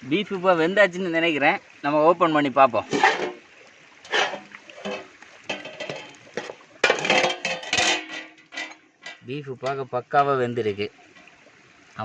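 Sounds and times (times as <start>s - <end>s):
ladle stirring and scraping: 2.9s - 3.4s, 4.0s - 9.3s
metal pot lid opening: 2.9s - 3.4s, 4.1s - 9.2s
metal clinks and clatters: 4.8s - 9.2s.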